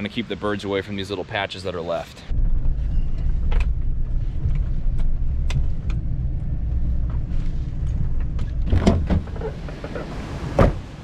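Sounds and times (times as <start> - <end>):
pickup truck engine rumbling: 2.3 - 11.0.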